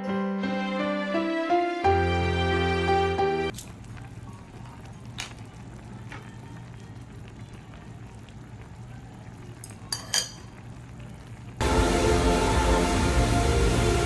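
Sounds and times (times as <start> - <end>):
music: 0.0 - 3.5, 11.6 - 14.0
low hum: 11.6 - 14.0.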